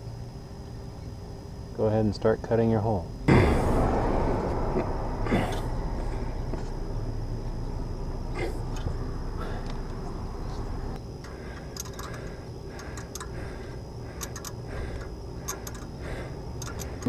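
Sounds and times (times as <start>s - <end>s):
low steady rumble: 3.0s - 17.0s
metal clicks and scraping: 11.2s - 13.4s.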